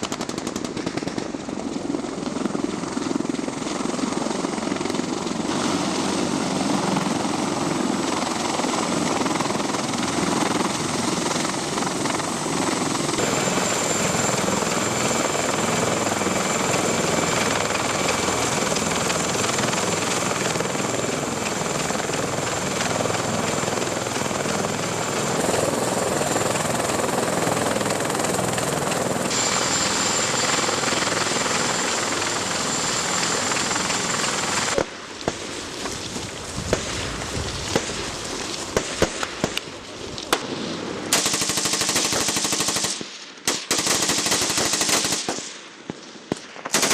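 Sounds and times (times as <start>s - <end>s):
helicopter rotor and turbine: 0.0s - 45.4s, 46.7s - 46.9s
high turbine whine: 3.2s - 34.8s.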